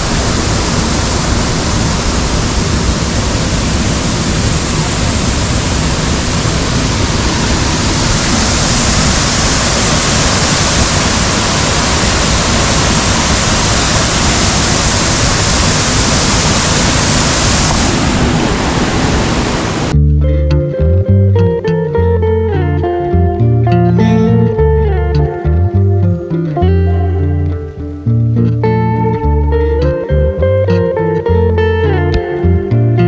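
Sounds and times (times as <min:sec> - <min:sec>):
waterfall rushing: 0:00.0 - 0:19.9
plucked guitar music: 0:19.9 - 0:33.0.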